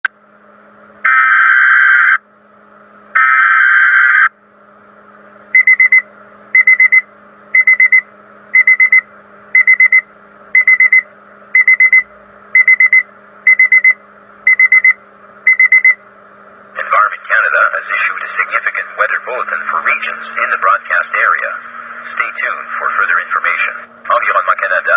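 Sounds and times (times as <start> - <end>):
faint hum: 0.0 - 24.9
screeching digital data bursts: 1.1 - 2.2, 3.2 - 4.3, 6.6 - 7.0, 7.6 - 8.0, 12.6 - 16.0
high-pitched alarm beeps: 5.6 - 8.0, 8.6 - 16.0.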